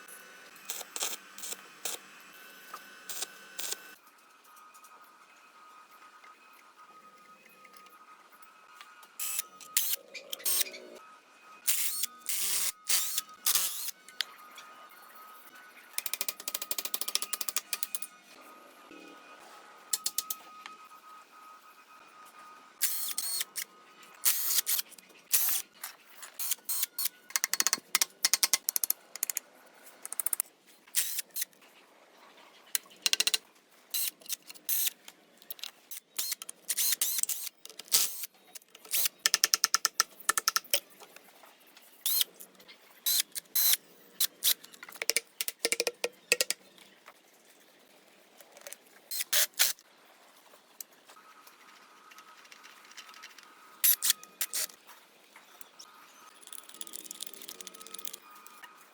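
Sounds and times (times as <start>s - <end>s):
hand tool scraping and clicking: 24.3s - 29.4s, 30.0s - 31.5s, 32.8s - 33.4s, 34.0s - 40.8s, 42.1s - 42.3s, 43.1s - 46.6s, 48.4s - 49.8s, 52.1s - 54.8s.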